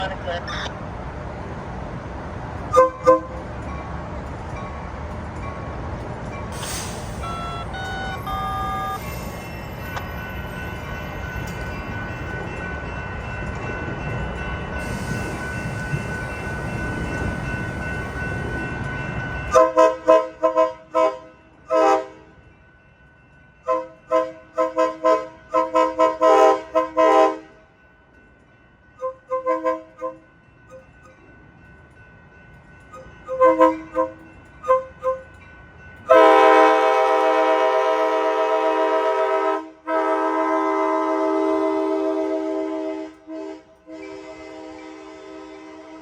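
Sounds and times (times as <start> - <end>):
locomotive horn toots: 2.7 - 3.4, 19.6 - 22.2, 23.7 - 27.5, 29.0 - 30.2, 36.1 - 46.0.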